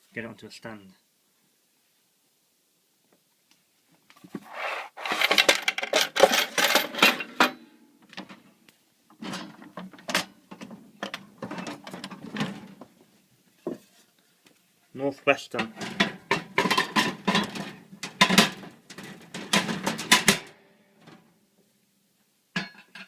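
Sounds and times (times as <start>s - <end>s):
metal parts clattering and clinking: 5.0s - 7.6s, 15.7s - 20.5s.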